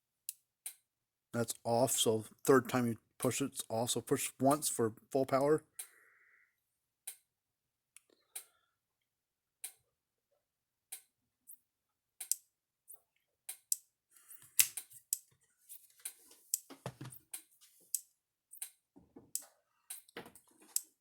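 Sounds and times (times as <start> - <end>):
irregular handling clicks: 12.2 - 12.4, 14.4 - 15.3.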